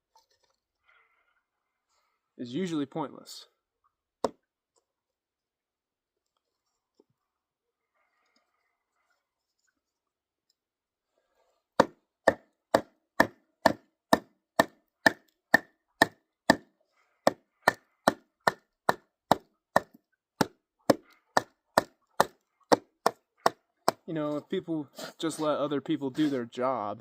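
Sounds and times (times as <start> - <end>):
hatchet chopping kindling: 11.8 - 24.1.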